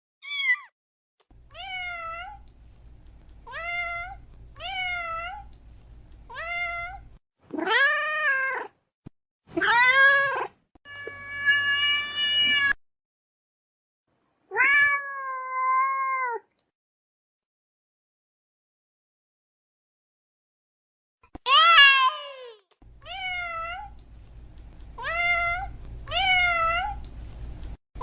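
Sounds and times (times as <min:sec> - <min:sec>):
cat meowing: 0:00.2 - 0:00.7, 0:01.5 - 0:02.4, 0:09.6 - 0:12.8, 0:14.5 - 0:16.5, 0:25.0 - 0:27.0.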